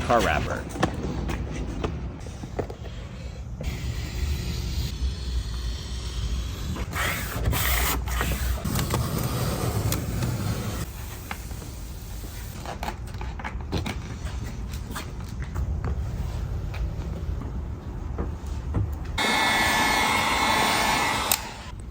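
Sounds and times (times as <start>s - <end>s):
clicks: 21.0s - 21.6s.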